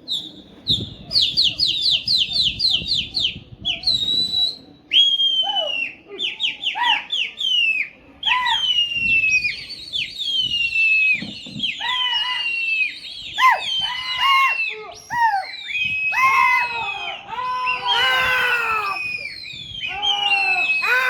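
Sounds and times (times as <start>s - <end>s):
whistles sliding down in pitch: 3.7s - 16.7s, 17.6s - 21.0s.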